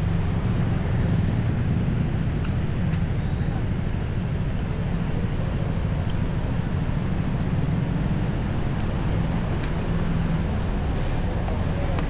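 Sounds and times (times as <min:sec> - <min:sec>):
faint engine hum: 0:00.0 - 0:12.0
street traffic rumble: 0:00.0 - 0:12.0.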